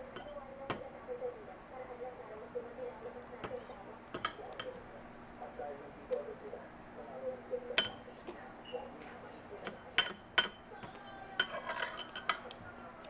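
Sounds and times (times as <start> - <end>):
cutlery clinking against dish: 0.1 - 0.9, 3.4 - 4.8, 7.8 - 8.4, 9.6 - 12.6.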